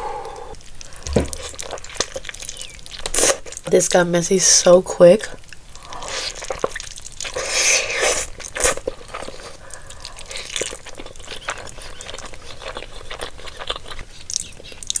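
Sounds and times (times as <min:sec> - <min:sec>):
chewing with clicks and smacks: 0:00.3 - 0:03.7, 0:05.3 - 0:15.0
loud bite into food: 0:06.0 - 0:15.0.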